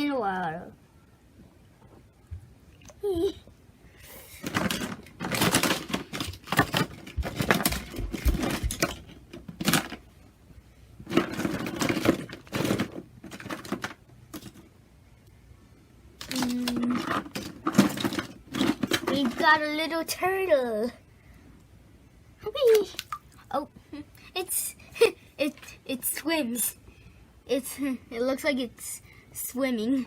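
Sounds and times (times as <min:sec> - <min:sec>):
plastic toys clattering: 0:04.4 - 0:10.1, 0:11.0 - 0:14.7, 0:16.2 - 0:19.8.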